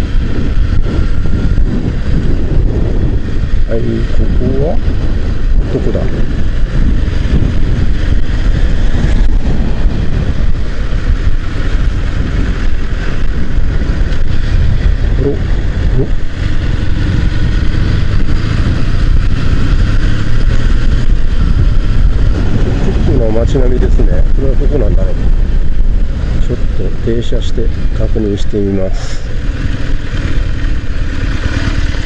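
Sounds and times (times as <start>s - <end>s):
motorcycle engine running: 0.0s - 32.0s
road and wind noise: 0.0s - 32.0s.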